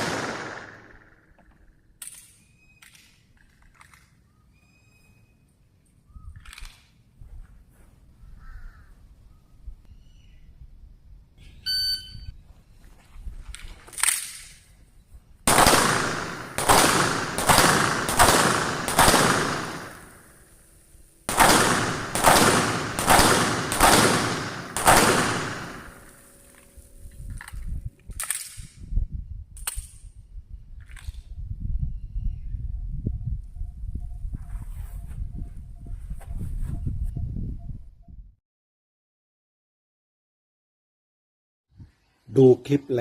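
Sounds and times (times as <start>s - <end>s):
handgun shots: 0.0s - 1.2s, 15.5s - 20.2s, 21.3s - 26.2s
short high beep: 11.6s - 12.3s.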